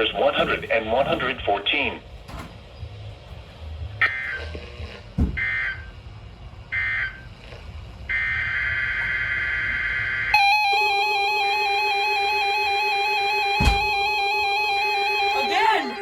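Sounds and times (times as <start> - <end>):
electronic alert tone: 10.4 - 16.0.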